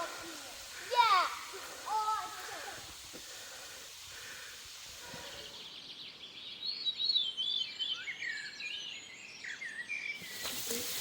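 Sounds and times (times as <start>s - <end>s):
outdoor background noise: 0.0s - 11.0s
songbird chirping and whistling: 5.3s - 11.0s.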